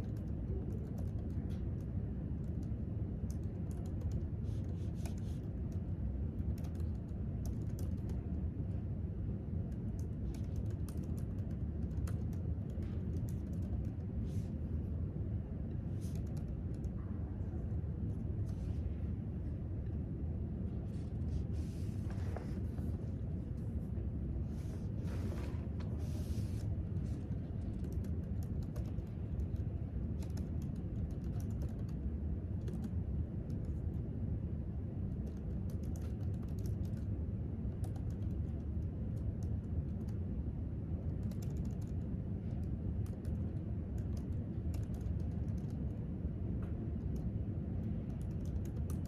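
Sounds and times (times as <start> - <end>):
laptop keyboard typing: 0.0 - 8.2, 9.7 - 14.4, 16.0 - 17.0, 26.1 - 33.8, 35.1 - 37.1, 37.7 - 40.2, 41.0 - 46.0, 47.0 - 49.0
low room hum: 0.0 - 49.0
soft rustle: 20.8 - 27.3.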